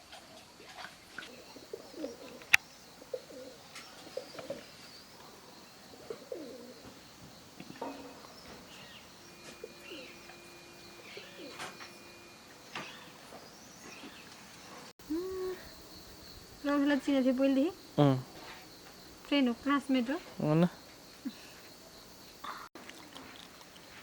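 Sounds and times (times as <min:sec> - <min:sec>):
dove cooing: 0:01.3 - 0:04.8, 0:05.9 - 0:06.9, 0:07.9 - 0:10.4, 0:11.0 - 0:12.1.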